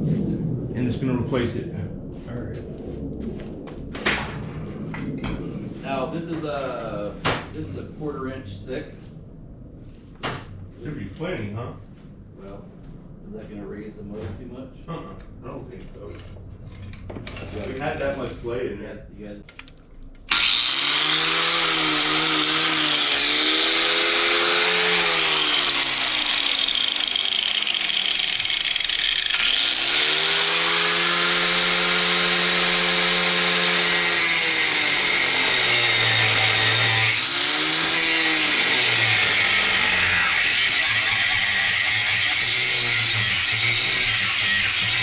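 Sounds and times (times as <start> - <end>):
angle grinder cutting steel: 20.3 - 45.0.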